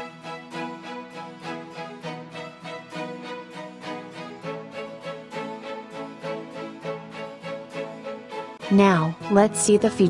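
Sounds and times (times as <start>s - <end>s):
plucked instrumental music: 0.0s - 10.0s.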